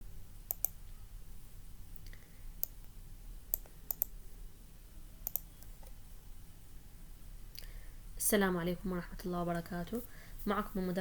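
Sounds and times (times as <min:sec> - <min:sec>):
computer mouse clicks: 0:00.5 - 0:00.8, 0:03.5 - 0:04.2, 0:05.2 - 0:06.0.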